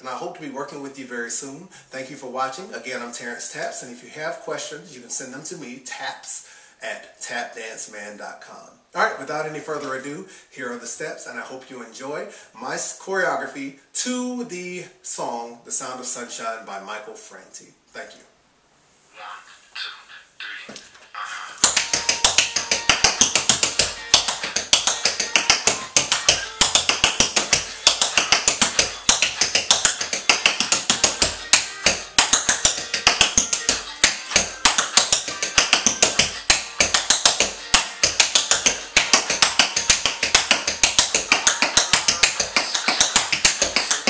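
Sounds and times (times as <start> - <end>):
tap shoes striking floor: 21.6 - 44.0.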